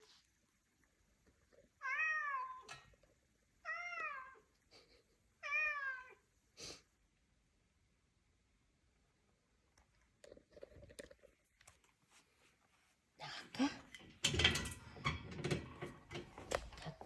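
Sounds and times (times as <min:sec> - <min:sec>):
cat meowing: 0:01.8 - 0:02.7, 0:03.6 - 0:04.5, 0:05.4 - 0:06.2.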